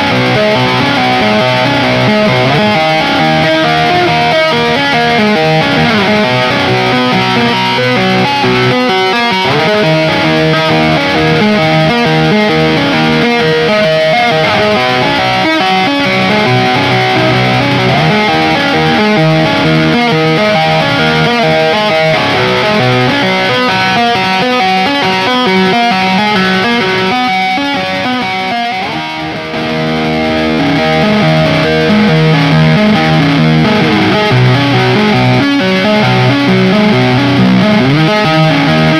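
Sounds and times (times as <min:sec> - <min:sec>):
distorted electric guitar: 0:00.0 - 0:38.9.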